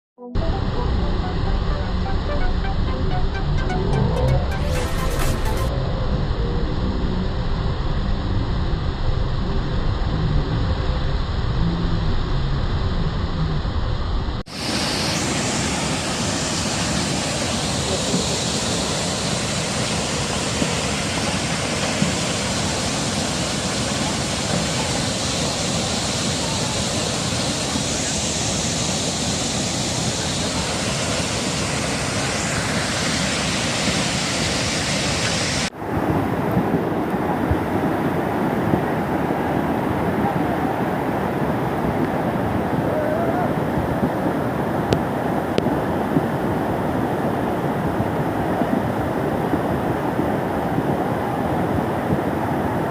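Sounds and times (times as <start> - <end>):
background music: 0.2 - 5.7
swollen river rushing: 14.5 - 52.9.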